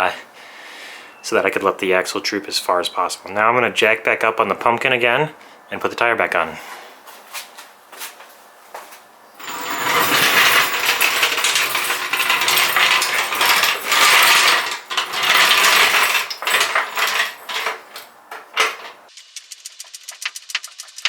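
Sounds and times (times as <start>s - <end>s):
metallic clicking and rattling: 9.4s - 19.0s.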